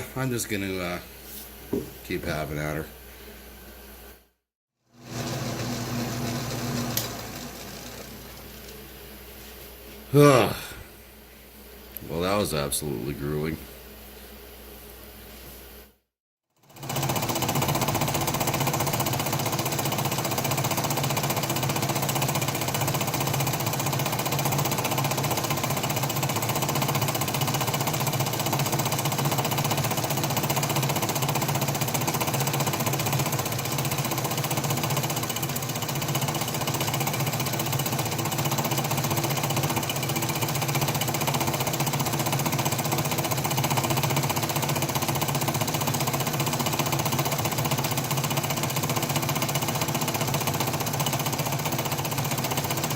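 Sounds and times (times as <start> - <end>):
low lathe hum: 5.0 - 12.4
metal lathe rattle: 16.8 - 52.9.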